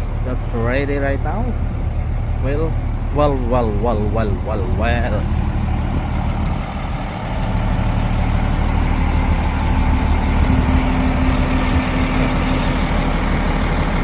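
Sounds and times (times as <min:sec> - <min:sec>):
diesel engine idling: 0:00.0 - 0:14.0.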